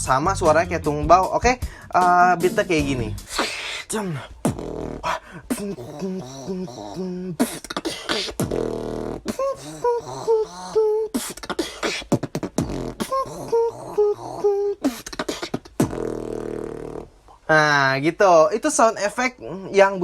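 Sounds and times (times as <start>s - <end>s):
person beatboxing: 0.0s - 17.4s
hummed melody: 2.0s - 3.3s.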